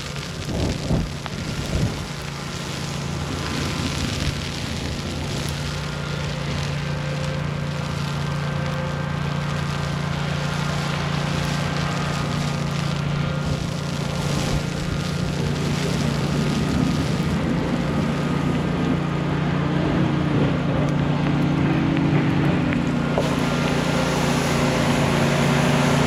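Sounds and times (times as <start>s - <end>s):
wind on microphone: 0.0s - 6.8s, 12.2s - 26.0s
low rumble of city traffic: 0.0s - 26.0s.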